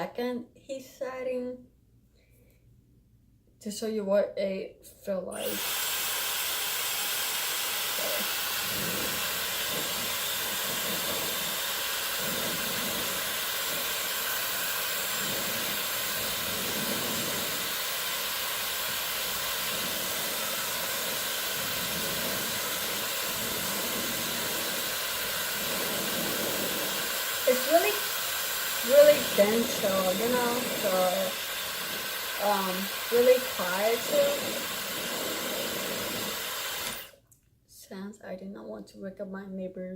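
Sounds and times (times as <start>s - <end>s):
hair dryer running: 5.3s - 37.2s.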